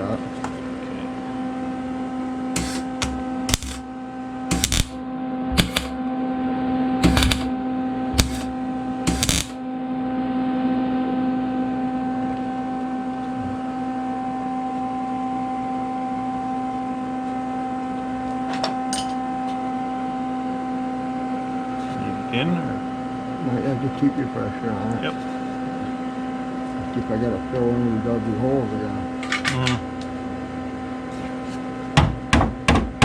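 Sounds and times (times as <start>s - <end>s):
steady electrical hum: 0.0s - 33.0s
welder crackling bursts: 2.6s - 3.9s, 4.5s - 6.0s, 7.0s - 7.5s, 8.2s - 9.6s.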